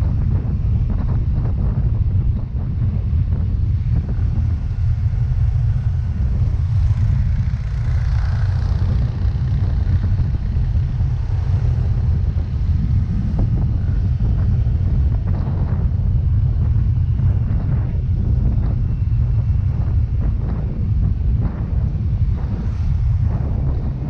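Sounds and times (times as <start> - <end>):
road noise: 0.0 - 24.0
wind buffeting microphone: 0.0 - 24.0
scooter engine: 4.8 - 14.6.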